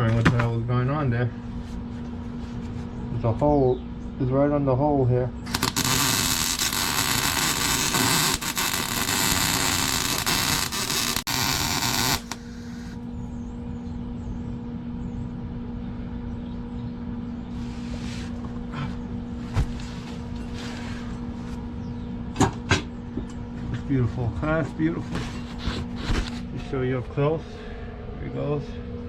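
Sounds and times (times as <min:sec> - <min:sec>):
electrical hum: 0:00.0 - 0:29.0
welding arc crackling: 0:05.5 - 0:13.0.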